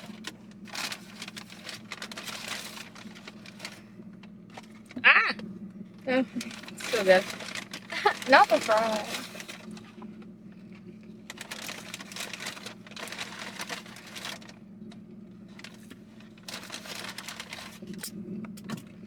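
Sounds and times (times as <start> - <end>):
paper bag rustling: 0.0 - 3.9, 6.1 - 10.3, 11.3 - 14.6, 15.4 - 18.1
steady low hum: 0.0 - 19.0.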